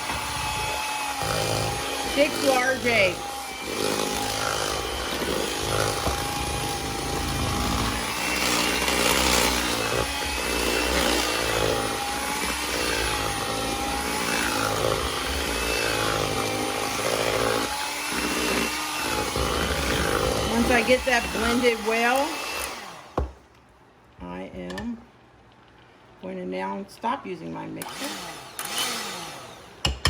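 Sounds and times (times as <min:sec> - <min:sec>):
electric mixer beating: 0:00.0 - 0:23.3, 0:27.8 - 0:30.0.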